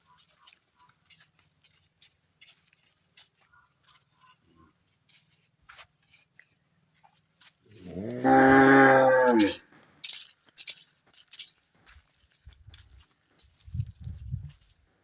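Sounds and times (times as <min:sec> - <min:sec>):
cow mooing: 0:07.8 - 0:09.6.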